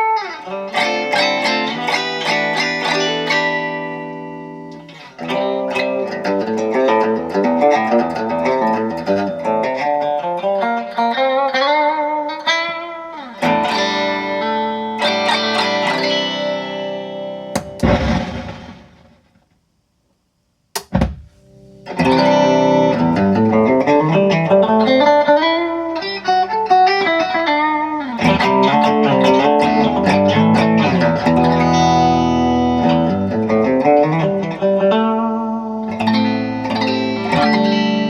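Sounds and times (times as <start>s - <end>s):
electric guitar playing: 0.0s - 19.2s, 20.8s - 38.0s
amp static noise: 13.2s - 38.0s
short sharp pop: 17.5s - 19.2s, 20.7s - 21.4s.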